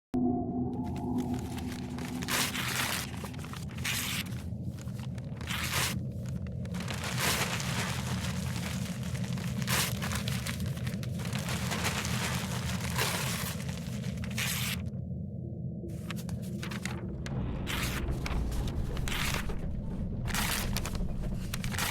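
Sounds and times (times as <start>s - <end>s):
steady low hum: 0.2s - 21.9s
paper crunching and tearing: 0.8s - 14.9s, 16.0s - 21.9s.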